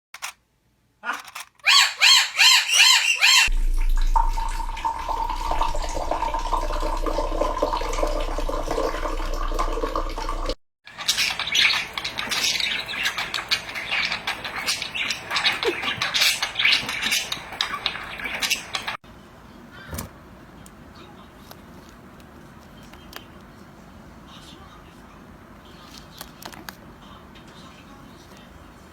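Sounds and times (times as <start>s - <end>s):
bird squawks: 1.0s - 3.5s
bird clicks and noisy calls: 1.1s - 3.5s, 10.9s - 19.0s
steady hum with held tones: 3.5s - 10.6s.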